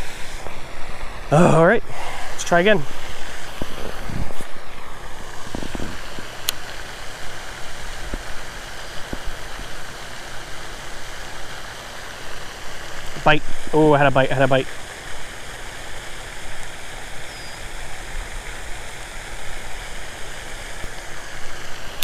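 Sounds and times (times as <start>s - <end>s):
wind buffeting microphone: 1.8s - 6.3s.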